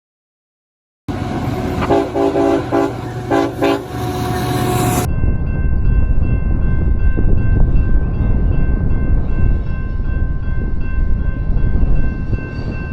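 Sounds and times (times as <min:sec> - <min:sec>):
train low rumble: 0:01.1 - 0:12.9
locomotive air horn blasts: 0:01.5 - 0:05.1.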